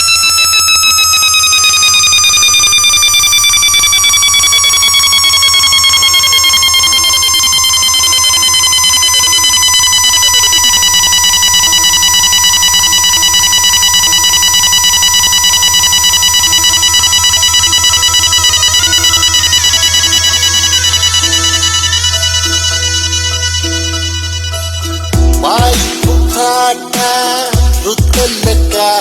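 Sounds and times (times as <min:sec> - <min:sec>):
electronic horn-like test tone: 0:05.5 - 0:29.0
low bass drone: 0:16.7 - 0:26.7, 0:27.5 - 0:28.7.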